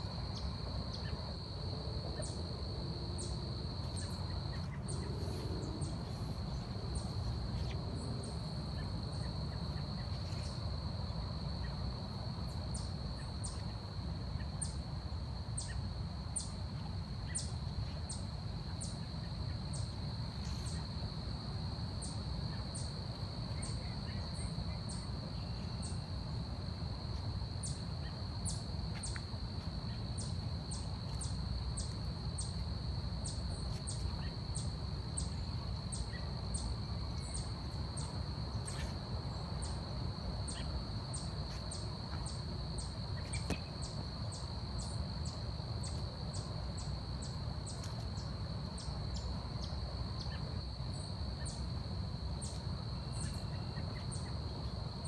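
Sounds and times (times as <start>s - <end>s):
insect chirps: 0.0s - 55.0s
insect drone: 0.0s - 55.0s.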